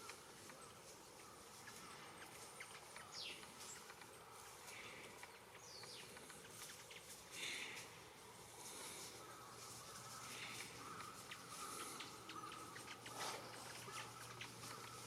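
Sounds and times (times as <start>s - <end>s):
bird chirps: 0.0s - 7.9s, 8.8s - 15.0s
noisy bird call: 0.0s - 15.0s
downward-sliding bird calls: 8.6s - 15.0s.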